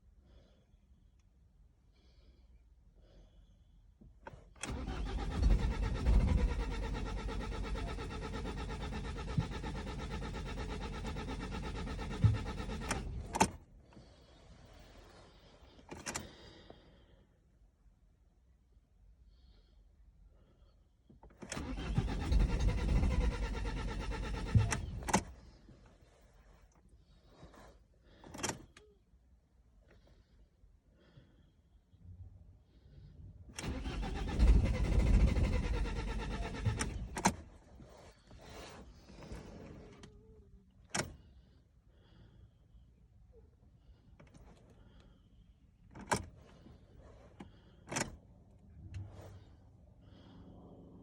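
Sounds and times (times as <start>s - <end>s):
engine cranking on starter motor: 4.2s - 14.2s, 15.7s - 16.8s, 21.2s - 25.9s, 27.5s - 28.9s, 33.5s - 41.4s, 45.8s - 50.7s.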